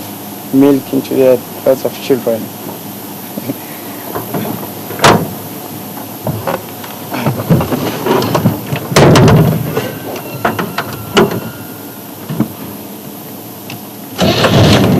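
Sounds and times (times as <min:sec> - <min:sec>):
rumbling thump: 0:04.3 - 0:05.4, 0:07.2 - 0:09.8, 0:14.2 - 0:14.9
knocks and clatters: 0:06.2 - 0:12.7, 0:14.2 - 0:14.9.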